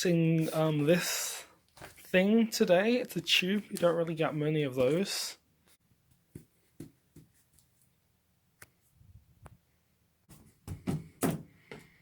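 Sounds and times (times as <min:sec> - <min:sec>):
cardboard tube taps and knocks: 0:10.3 - 0:11.5.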